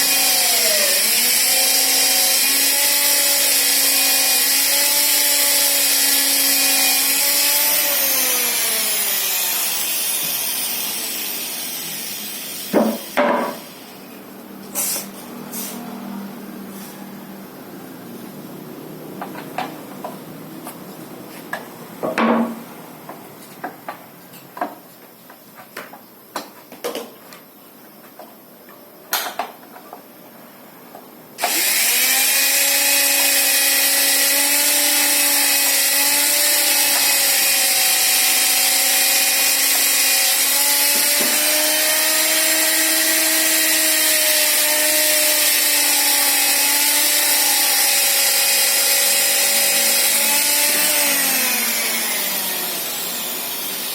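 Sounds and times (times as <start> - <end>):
circular saw motor running: 0.0 - 13.2, 31.4 - 53.9.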